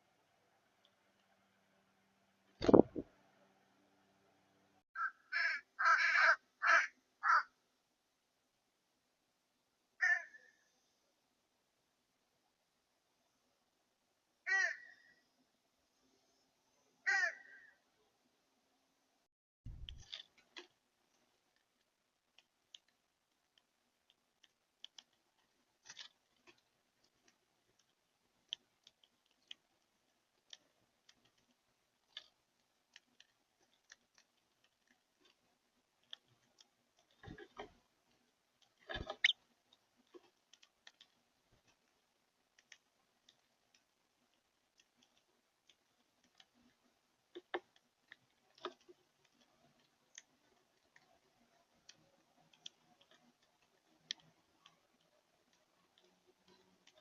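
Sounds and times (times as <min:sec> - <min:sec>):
faint clicks and taps: 0:19.7 - 0:57.0.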